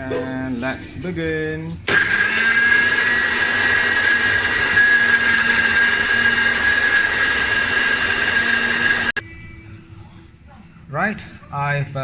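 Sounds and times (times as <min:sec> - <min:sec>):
electric blender whining: 0:01.9 - 0:09.2.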